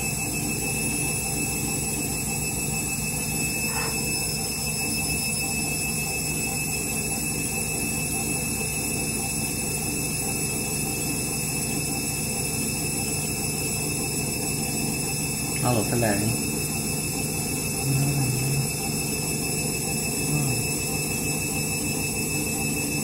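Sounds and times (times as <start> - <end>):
washing machine hum: 0.0 - 4.9
high whine: 17.7 - 19.0.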